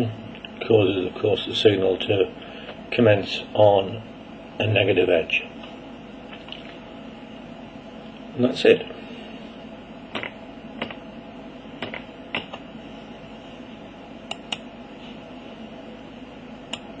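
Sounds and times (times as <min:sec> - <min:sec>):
low electrical hum: 0:00.0 - 0:17.0
sharp clicks: 0:14.3 - 0:14.7.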